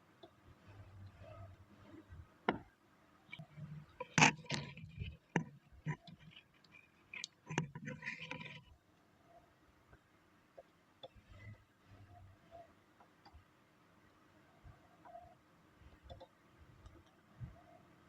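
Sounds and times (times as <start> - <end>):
clicks knocks and scrapes of tools: 3.3 - 8.7.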